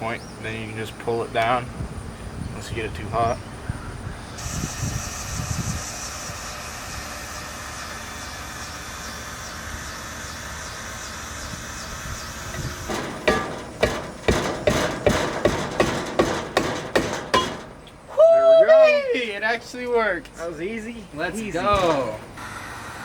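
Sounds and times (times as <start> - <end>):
sharp knocks on wheel: 12.5 - 18.0.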